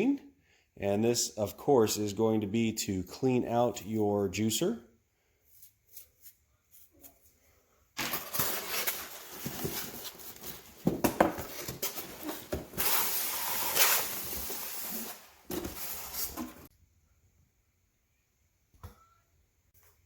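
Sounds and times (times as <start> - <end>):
plastic packaging rustling: 8.0 - 16.7.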